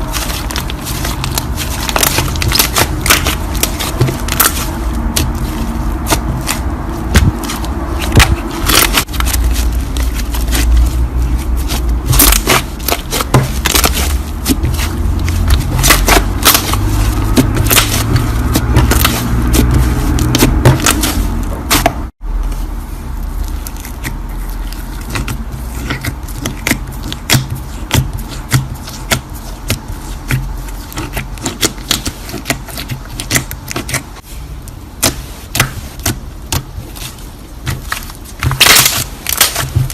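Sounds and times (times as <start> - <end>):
slime squishing with sticky pops: 0.0 - 22.6, 23.2 - 39.9.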